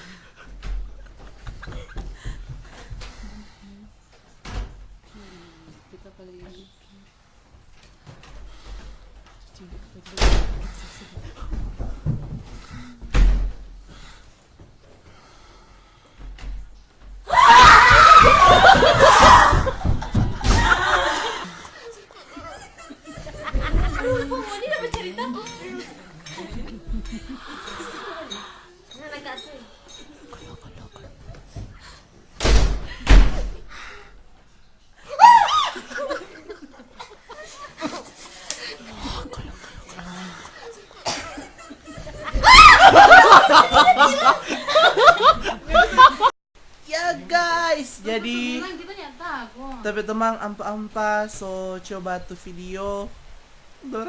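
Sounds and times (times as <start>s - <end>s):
heavy thumps: 16.2s - 21.0s
person shrieking: 17.3s - 19.6s, 35.1s - 35.8s, 42.4s - 43.0s
loud screaming: 17.3s - 19.8s, 35.1s - 35.9s, 42.3s - 43.3s
shrieking laughter: 17.3s - 28.4s, 35.1s - 39.6s, 40.6s - 46.3s.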